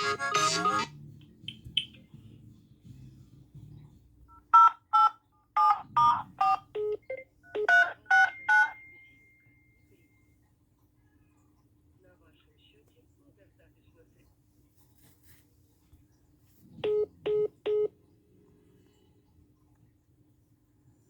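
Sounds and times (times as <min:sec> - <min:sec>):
phone ringtone tune: 0:00.0 - 0:00.9, 0:04.6 - 0:09.5
touch-tone keypad beeps: 0:04.6 - 0:08.9.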